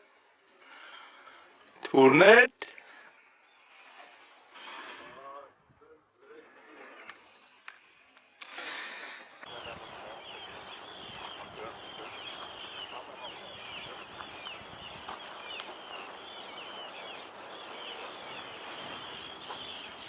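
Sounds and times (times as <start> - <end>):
flock of birds chirping: 8.9 - 20.0.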